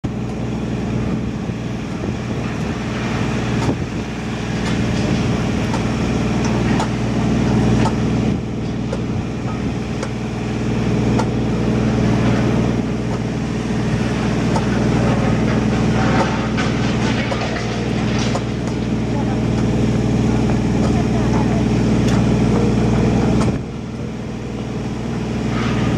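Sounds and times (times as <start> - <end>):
demolition machinery engine: 0.0 - 25.9
knocks and clatter of breaking material: 14.4 - 19.8.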